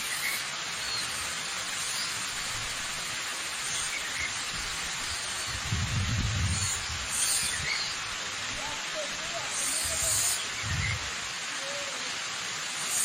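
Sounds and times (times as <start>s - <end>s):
waterfall rushing: 0.0s - 13.0s
small birds chirping: 3.6s - 12.0s.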